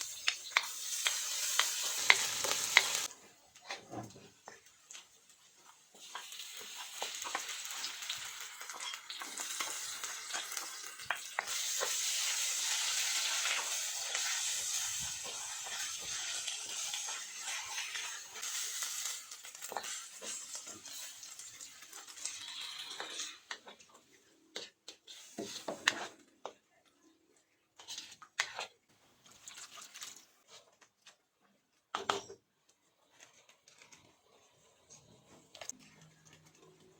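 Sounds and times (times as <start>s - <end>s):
food sizzling in hot oil: 0.0s - 3.1s, 4.7s - 23.8s, 25.1s - 26.1s.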